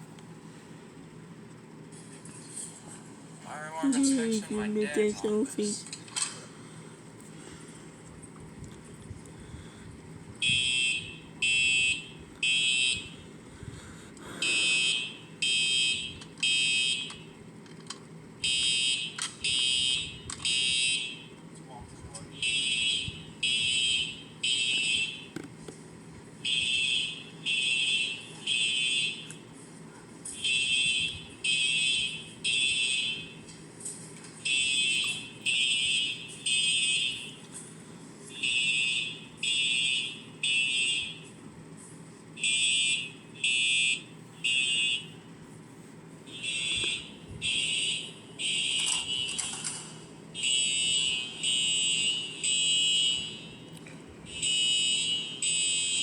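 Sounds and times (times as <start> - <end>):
fire alarm horn blasts: 10.4 - 13.3, 14.4 - 17.4, 18.4 - 21.4, 22.3 - 25.4, 26.4 - 29.5, 30.3 - 33.5, 34.4 - 37.5, 38.3 - 41.4, 42.4 - 45.3, 46.3 - 49.5, 50.3 - 53.7, 54.3 - 56.0.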